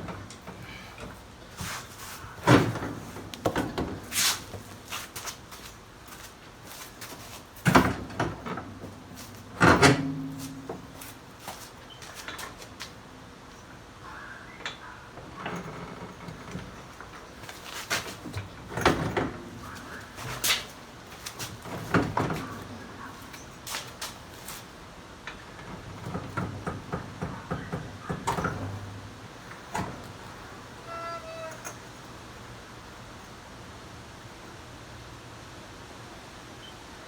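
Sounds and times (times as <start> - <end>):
knocks and clunks of tools: 0.0 - 4.6, 7.6 - 11.2, 25.3 - 30.2.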